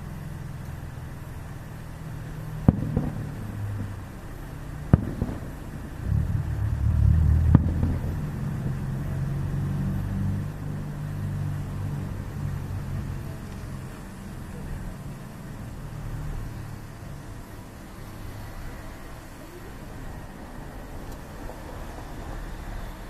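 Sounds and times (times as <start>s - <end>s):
steady low hum: 0.0s - 23.0s
fireworks bangs: 2.2s - 9.1s
low rumbling roll: 2.6s - 13.6s.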